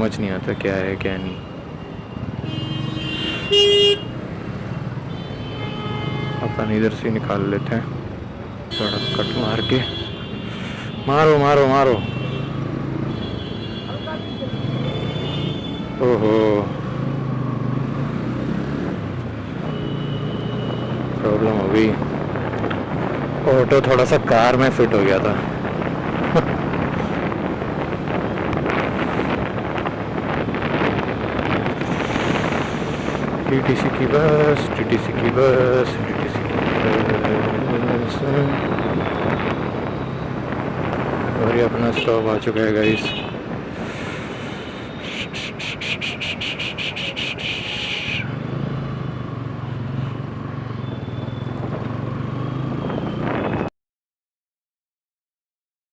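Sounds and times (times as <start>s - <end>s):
faint motorcycle and traffic: 0.0s - 53.7s
wind buffeting microphone: 21.9s - 23.4s, 25.3s - 41.8s.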